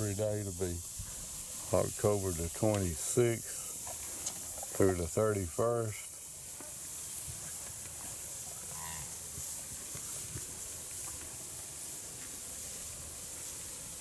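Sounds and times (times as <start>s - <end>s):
steady background hiss: 0.0s - 14.0s
calf mooing: 8.7s - 9.2s.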